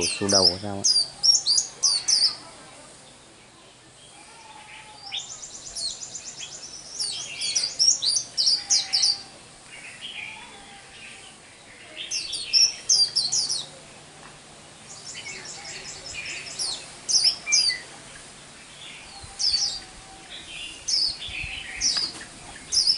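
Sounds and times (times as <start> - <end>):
bird twittering: 0.0 - 2.4, 5.0 - 10.4, 11.6 - 13.8, 14.9 - 17.9, 20.4 - 22.9.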